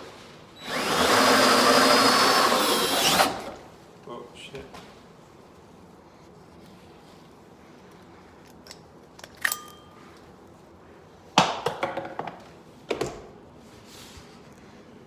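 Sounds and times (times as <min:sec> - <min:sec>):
tools knocking and clinking: 0:09.2 - 0:10.0.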